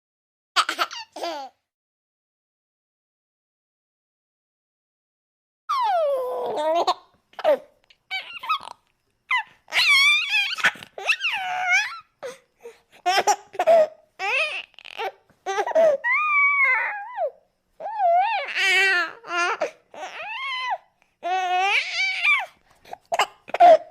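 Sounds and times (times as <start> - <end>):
baby squealing and babbling: 5.7 - 12.4, 13.0 - 23.8.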